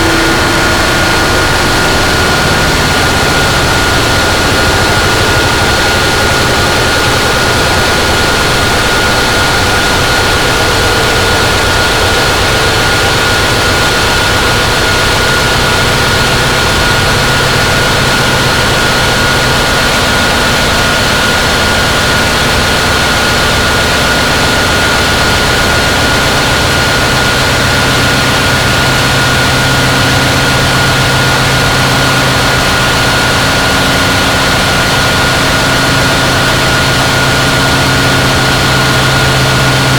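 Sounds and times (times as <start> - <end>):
distorted noise wall: 0.0 - 39.9
high-pitched whine: 0.0 - 39.9
low droning tones: 0.0 - 39.9.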